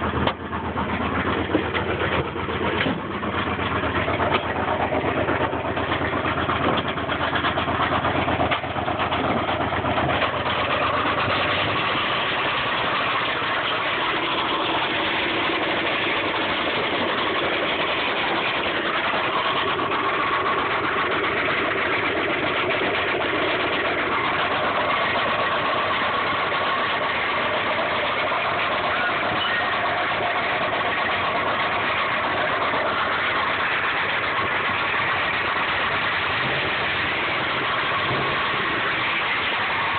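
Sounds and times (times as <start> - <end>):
car engine running with knock: 0.0 - 39.9.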